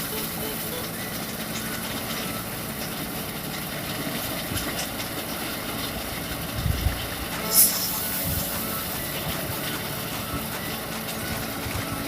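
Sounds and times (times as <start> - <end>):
rice thresher running: 0.0 - 12.0.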